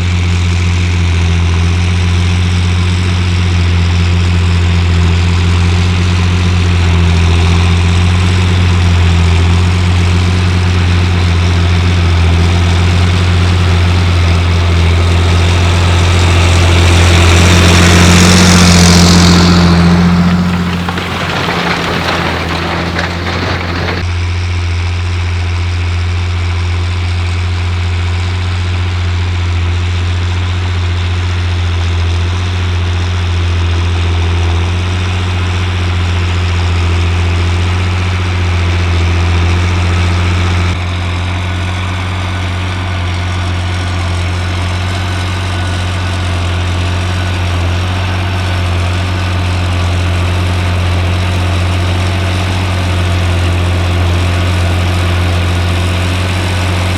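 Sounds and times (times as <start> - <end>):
tractor diesel engine droning: 0.0 - 24.1, 42.7 - 56.9.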